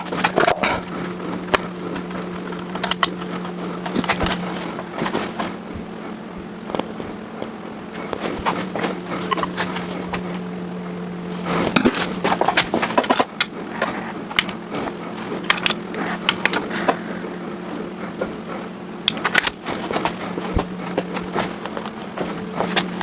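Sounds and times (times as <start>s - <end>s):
steady hum: 0.0s - 23.0s.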